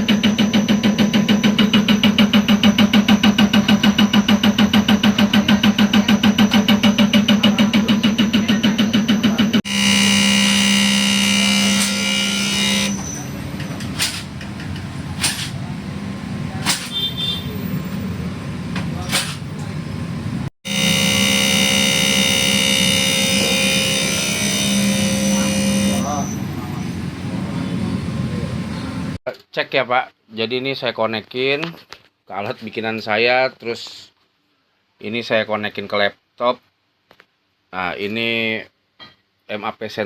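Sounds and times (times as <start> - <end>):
high whine: 0.0 - 14.4, 20.4 - 29.2
diesel engine running: 0.1 - 29.2.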